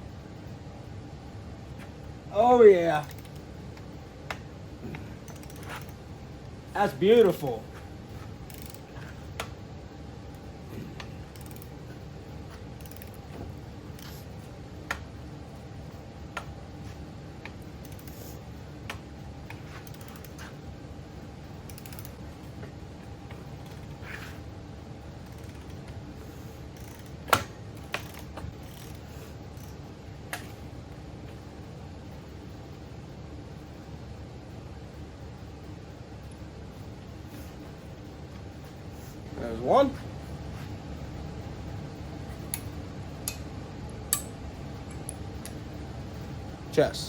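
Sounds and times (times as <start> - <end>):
low background hum: 0.0 - 47.0
wrench metallic clicks: 3.0 - 3.5, 5.2 - 6.0, 8.5 - 9.5, 11.0 - 11.8, 12.8 - 13.3, 17.8 - 20.5, 21.7 - 22.2, 25.2 - 25.8, 26.8 - 30.5.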